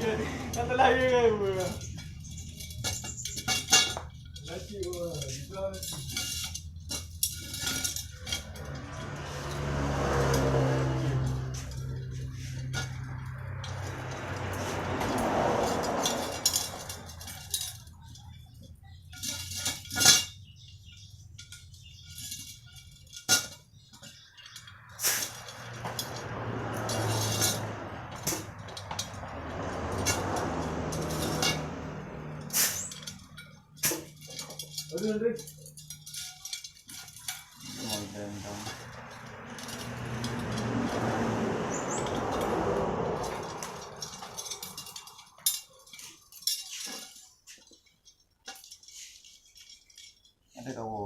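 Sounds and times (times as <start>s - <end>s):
vehicle engine passing: 0.0s - 3.4s, 7.8s - 19.0s, 24.1s - 36.0s, 37.1s - 46.4s
metal spokes clinking: 0.0s - 51.0s.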